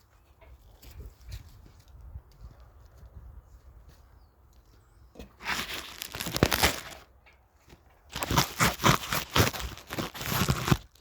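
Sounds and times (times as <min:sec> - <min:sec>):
crinkling crackling rustle: 0:05.4 - 0:11.0.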